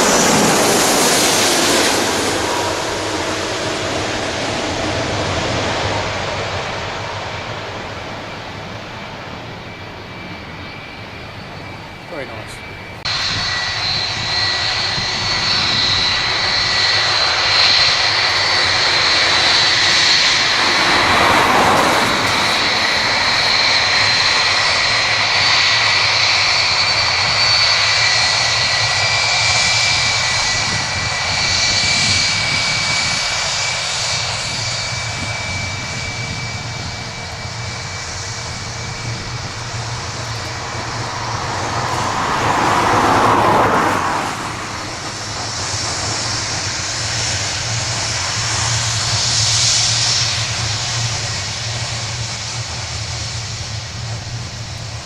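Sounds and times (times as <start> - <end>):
high steady whine: 0.0 - 55.0
jet engines roaring: 0.0 - 55.0.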